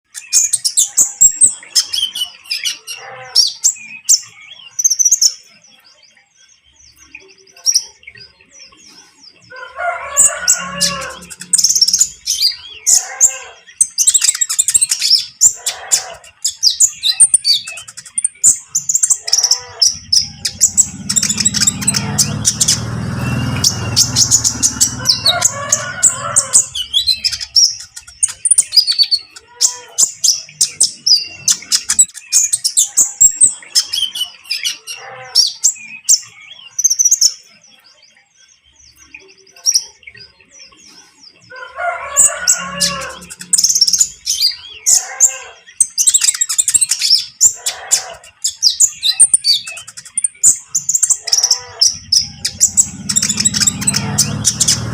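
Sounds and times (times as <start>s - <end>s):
birds chirping trills: 0.0s - 54.9s
low rumble: 19.9s - 27.4s, 51.8s - 54.9s.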